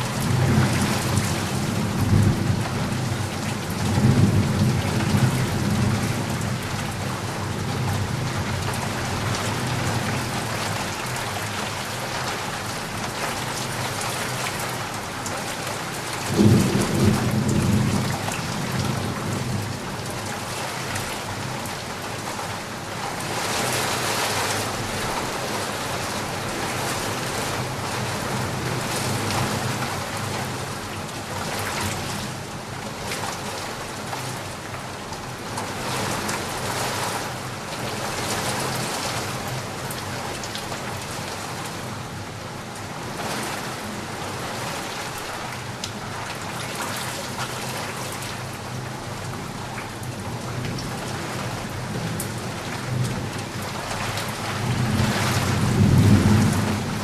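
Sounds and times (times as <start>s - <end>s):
heavy rain: 0.0s - 57.0s.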